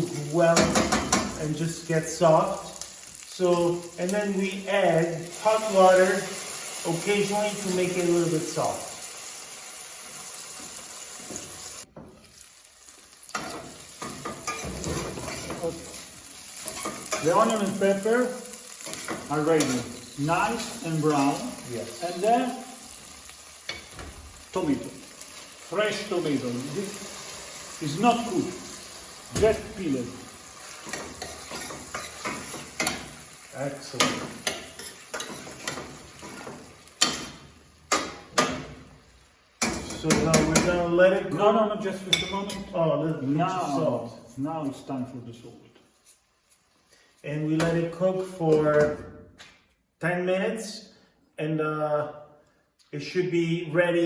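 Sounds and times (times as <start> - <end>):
vegetables sizzling in a pan: 0.0 - 40.9
utensil scraping a pan: 13.4 - 17.7, 30.6 - 33.2
stirring scrape and clatter: 30.7 - 33.2.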